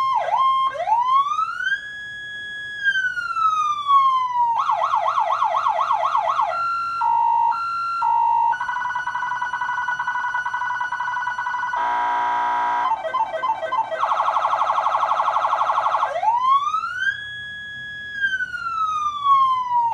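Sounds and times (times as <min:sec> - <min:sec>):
electronic siren cycling tones: 0:00.0 - 0:19.9
buzzy horn blast: 0:11.8 - 0:13.0.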